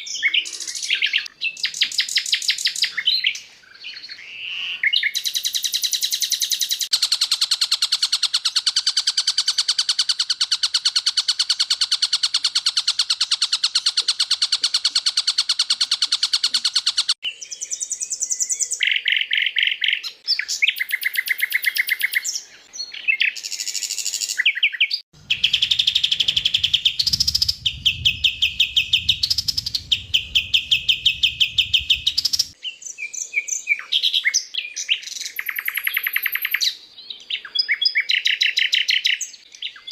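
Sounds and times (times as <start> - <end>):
rapid bird chirping: 0.0 - 39.9
low rumble: 26.3 - 32.5.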